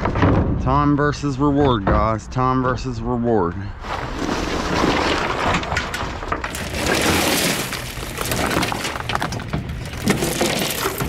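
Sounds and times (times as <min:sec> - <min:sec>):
junk rattling and clattering: 0:00.0 - 0:00.8, 0:04.2 - 0:11.0.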